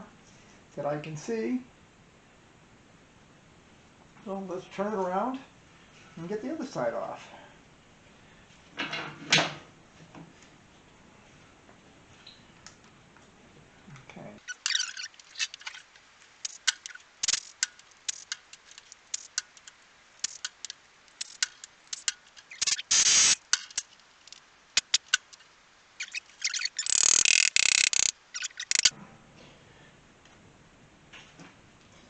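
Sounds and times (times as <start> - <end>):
metallic rattling bursts: 14.4 - 28.9.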